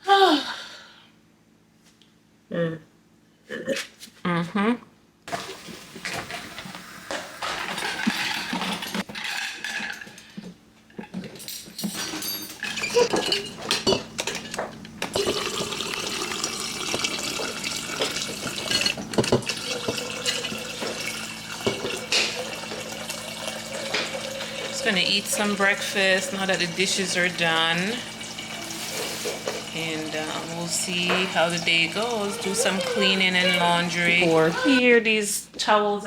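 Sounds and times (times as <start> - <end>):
tap water running: 5.3 - 9.1, 12.6 - 34.8
dishes and cutlery clinking: 7.4 - 15.8, 16.4 - 22.8.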